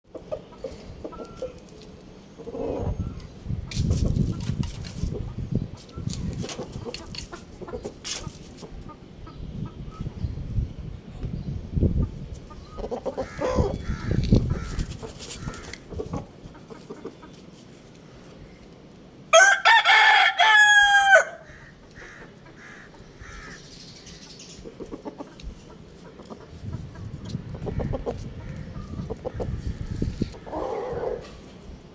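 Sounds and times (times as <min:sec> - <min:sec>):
rooster crowing: 0:19.3 - 0:21.6.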